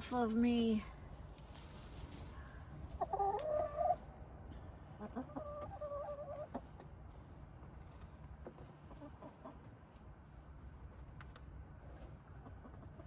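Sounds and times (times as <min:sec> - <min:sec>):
hens calling: 0:02.2 - 0:04.2, 0:04.8 - 0:06.8.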